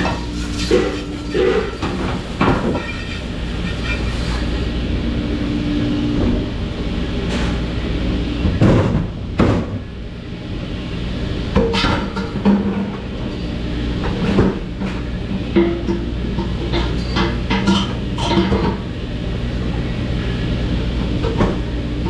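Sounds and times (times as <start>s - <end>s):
dishes and racks clattering: 0.0s - 5.0s
loud machine hum: 0.0s - 8.4s.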